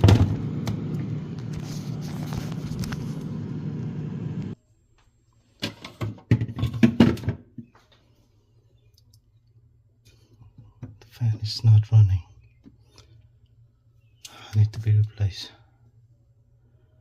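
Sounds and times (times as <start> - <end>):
refrigerator compressor humming: 0.0 - 4.6.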